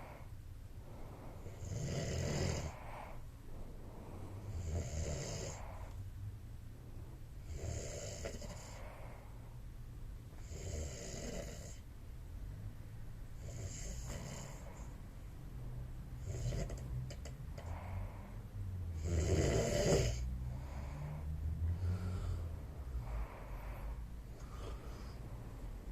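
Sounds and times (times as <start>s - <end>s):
man snoring: 1.4s - 2.9s, 4.4s - 5.8s, 7.4s - 8.8s, 10.4s - 11.8s, 13.4s - 14.9s, 16.2s - 17.8s, 18.9s - 23.7s.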